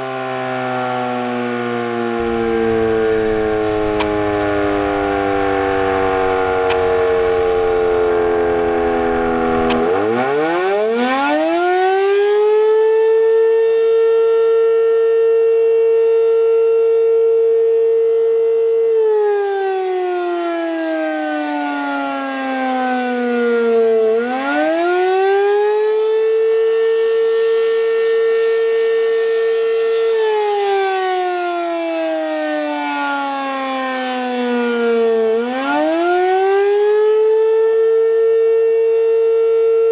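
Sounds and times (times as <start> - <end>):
wavering warning siren: 1.8 - 10.1.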